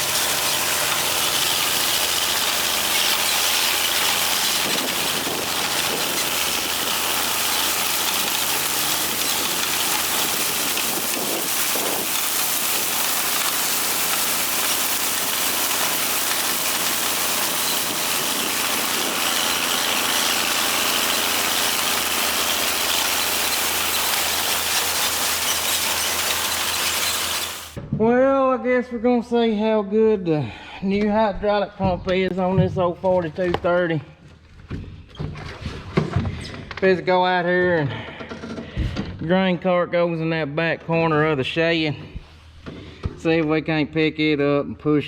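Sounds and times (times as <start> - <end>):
tractor engine running: 0.0 - 27.8.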